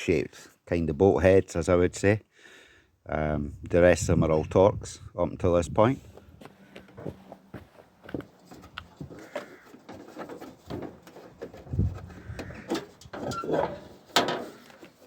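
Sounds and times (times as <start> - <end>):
hand tools knocking and scraping: 8.1 - 15.0.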